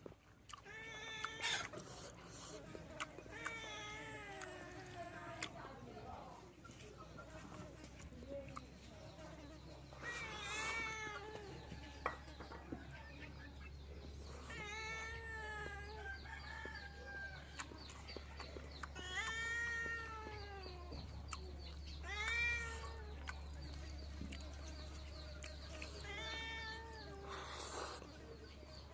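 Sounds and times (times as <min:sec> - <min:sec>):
cat meowing: 0:03.3 - 0:04.4, 0:19.0 - 0:20.9, 0:22.0 - 0:23.1, 0:26.0 - 0:27.3.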